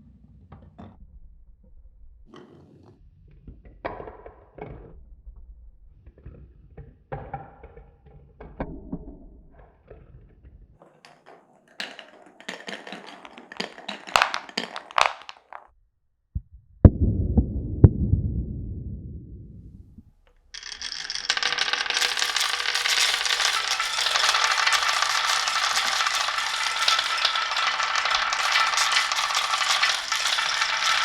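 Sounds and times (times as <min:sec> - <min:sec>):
marble rolling down wooden track: 0:10.8 - 0:15.7, 0:20.6 - 0:31.0
marbles clacking on wood: 0:11.0 - 0:15.7, 0:20.6 - 0:31.0.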